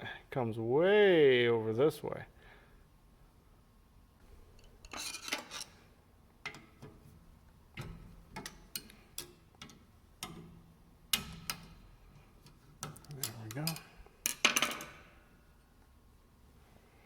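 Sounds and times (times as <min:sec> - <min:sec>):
wrenches clinking on metal bolts: 0:04.6 - 0:05.8, 0:07.8 - 0:15.0.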